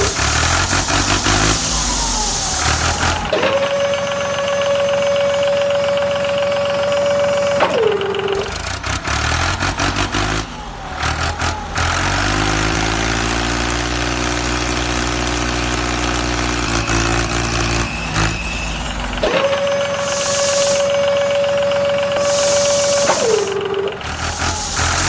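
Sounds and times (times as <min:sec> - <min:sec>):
small tractor engine: 0:00.0 - 0:25.0
high whine: 0:17.3 - 0:25.0.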